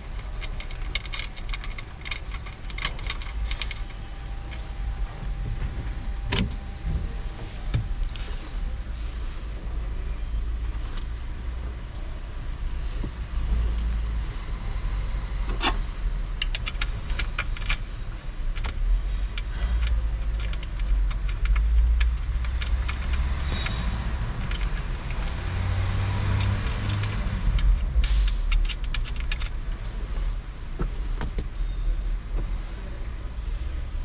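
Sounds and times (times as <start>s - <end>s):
metallic and plastic clicks: 0.0s - 4.6s, 15.5s - 29.8s
steady low rumble: 0.0s - 34.0s.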